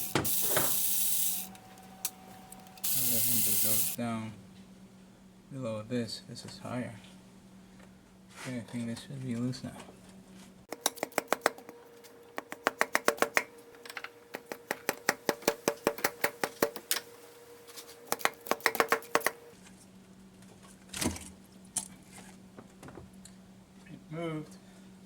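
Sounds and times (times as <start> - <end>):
ratchet wrench clicking: 0.0 - 4.0.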